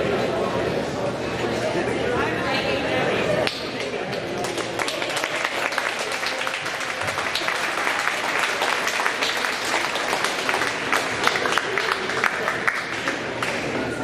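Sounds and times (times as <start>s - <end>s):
audience applauding: 3.8s - 14.0s.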